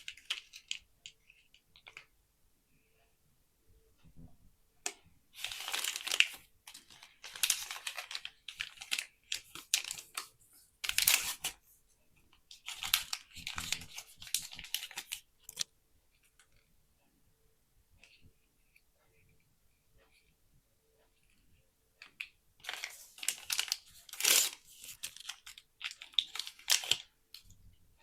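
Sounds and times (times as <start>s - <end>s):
plastic packaging crinkling: 5.4s - 11.6s, 12.5s - 15.6s, 22.6s - 27.5s.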